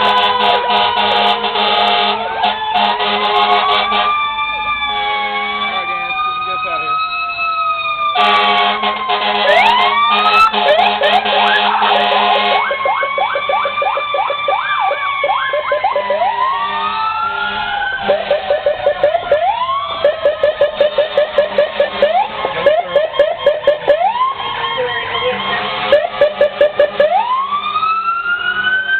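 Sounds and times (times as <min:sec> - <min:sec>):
blaring horn: 0:00.0 - 0:04.3, 0:04.9 - 0:06.1, 0:08.1 - 0:13.7, 0:15.6 - 0:24.1, 0:25.1 - 0:27.4
fire truck sirens wailing: 0:00.0 - 0:28.9.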